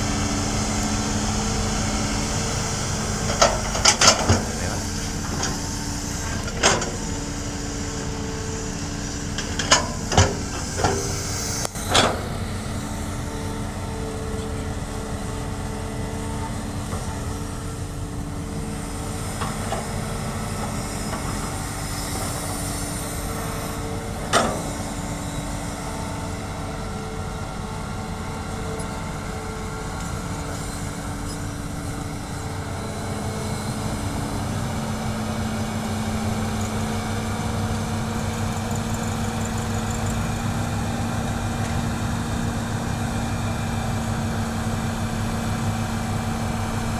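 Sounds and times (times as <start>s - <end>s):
excavator engine humming: 0.0s - 46.9s.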